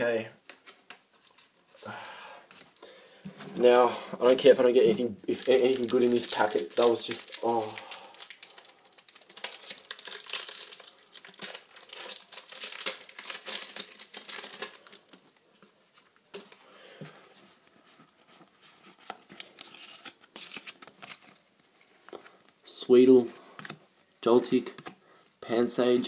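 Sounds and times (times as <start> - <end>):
wrapper tearing and crinkling: 5.3 - 15.4, 19.4 - 21.4.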